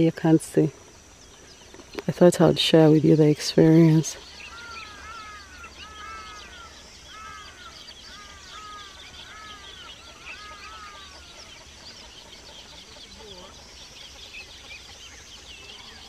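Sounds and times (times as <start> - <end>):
high bird chirps: 4.0 - 16.0.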